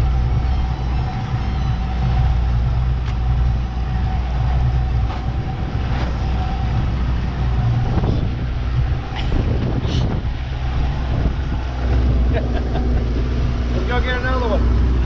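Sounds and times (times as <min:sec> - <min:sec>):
outboard motor droning: 0:00.0 - 0:15.0
water noise: 0:00.0 - 0:15.0
wind: 0:00.0 - 0:15.0.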